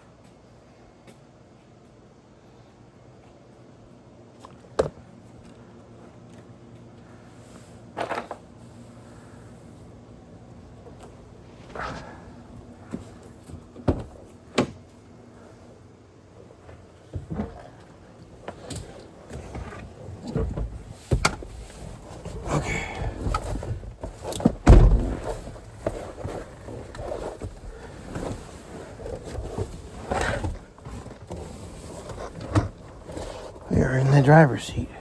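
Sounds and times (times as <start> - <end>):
sharp knocks and thunks: 24.4 - 25.6.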